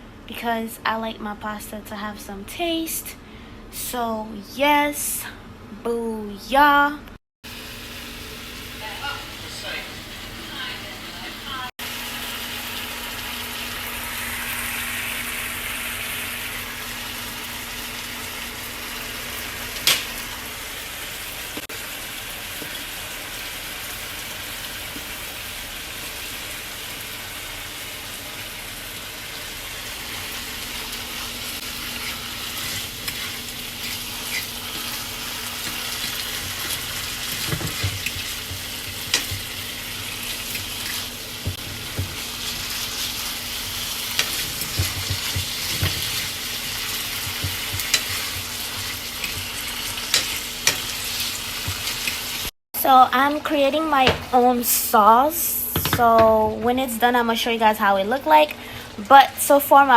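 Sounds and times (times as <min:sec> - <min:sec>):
meat sizzling in a pan: 0:07.5 - 0:52.5
utensil knocking against pan: 0:44.2 - 0:46.2, 0:47.2 - 0:48.5.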